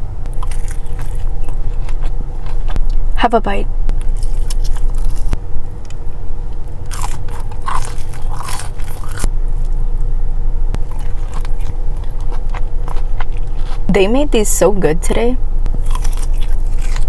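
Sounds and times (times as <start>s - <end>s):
low hum: 0.0s - 17.0s
biting and chewing fried chicken: 0.2s - 3.2s, 3.9s - 9.7s, 10.8s - 13.9s, 15.7s - 17.0s
loud crunches: 0.2s - 3.2s, 3.9s - 9.8s, 10.8s - 13.9s, 15.7s - 17.0s.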